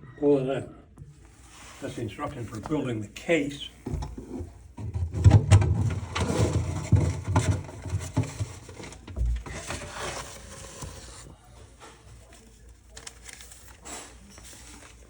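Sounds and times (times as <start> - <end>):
paper rustling: 4.4 - 15.0.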